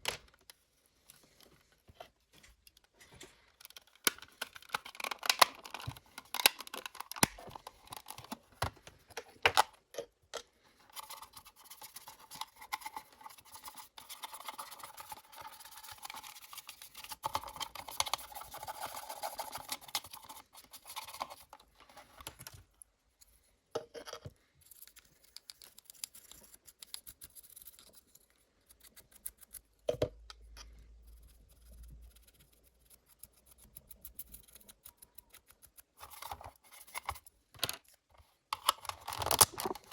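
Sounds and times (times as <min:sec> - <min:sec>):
small tools clicking on plastic: 0:32.0 - 0:39.9.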